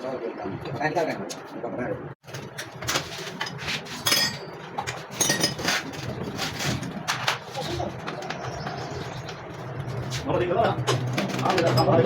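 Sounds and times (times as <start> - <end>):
metal tools clinking: 3.3 - 6.1.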